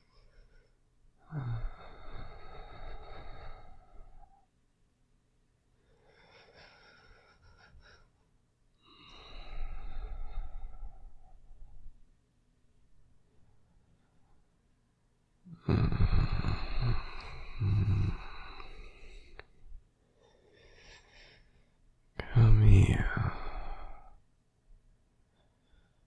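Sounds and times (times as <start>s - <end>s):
faint low hum: 0.0s - 26.0s
man breathing heavily: 5.8s - 8.2s, 16.0s - 21.8s.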